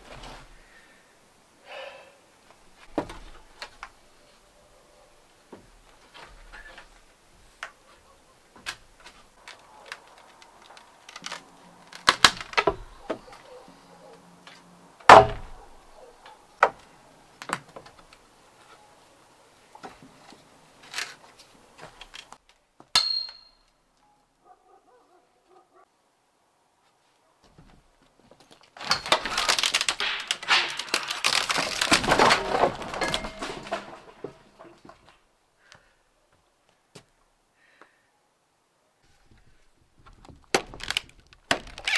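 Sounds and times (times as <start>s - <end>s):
short metallic ring: 23.0s - 23.7s
hard objects knocking and clattering: 28.8s - 35.0s.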